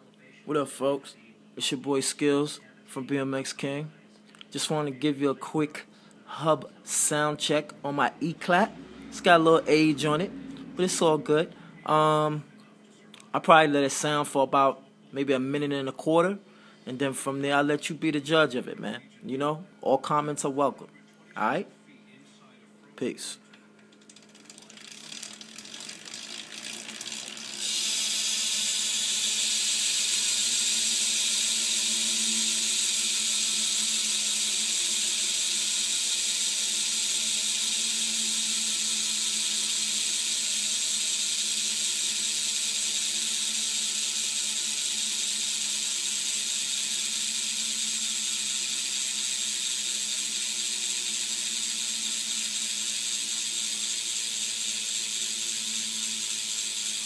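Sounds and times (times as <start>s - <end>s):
bicycle hub ratchet clicks: 23.8s - 57.0s
freewheeling hub buzzing: 23.8s - 57.0s.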